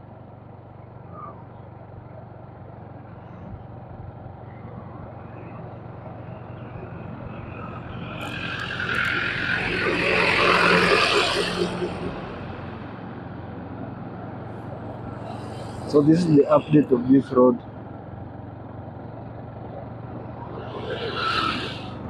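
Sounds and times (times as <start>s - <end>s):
vehicle passing close by: 4.8s - 22.0s.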